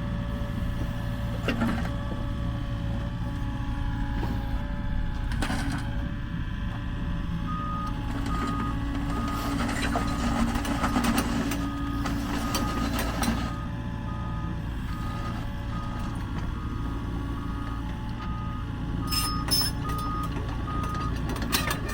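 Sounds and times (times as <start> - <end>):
diesel engine running: 0.0 - 21.9
reversing alarm beeping: 7.5 - 21.9.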